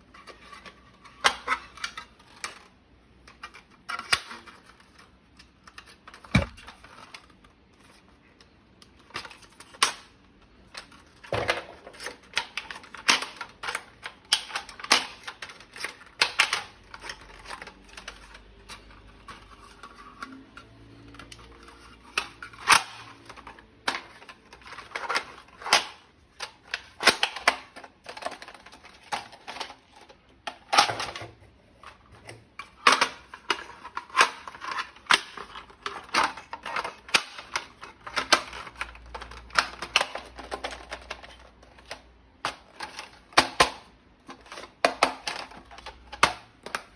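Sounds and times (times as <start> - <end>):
plastic toy gun parts clicking: 10.7 - 20.3, 21.1 - 31.2, 32.6 - 46.9.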